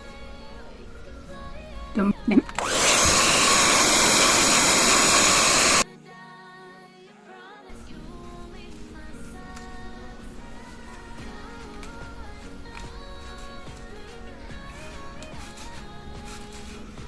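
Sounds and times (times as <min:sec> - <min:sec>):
hair dryer blowing: 0:02.4 - 0:05.8.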